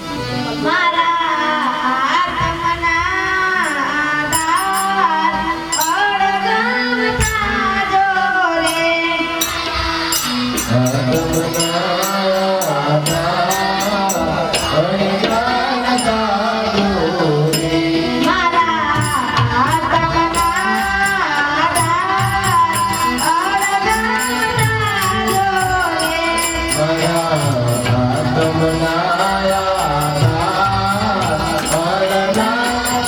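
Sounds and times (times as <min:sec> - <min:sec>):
person singing: 0:00.0 - 0:33.0
hand percussion clicking: 0:19.0 - 0:33.0.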